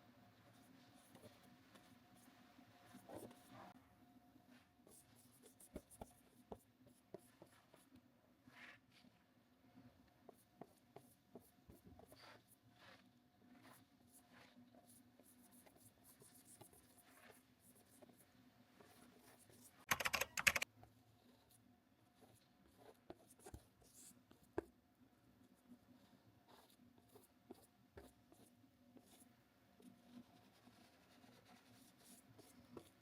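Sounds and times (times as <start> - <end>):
paintbrush rubbing on canvas: 11.8 - 14.9, 15.6 - 18.1.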